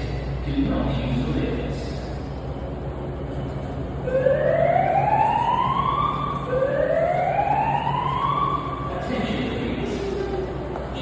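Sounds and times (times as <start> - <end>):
rising whoop siren: 4.1 - 10.6.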